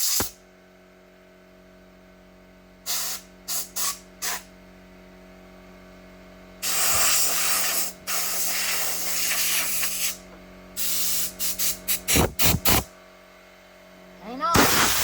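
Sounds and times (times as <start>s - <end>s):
aerosol spray can hissing: 0.0s - 0.3s, 6.6s - 10.2s, 14.6s - 15.0s.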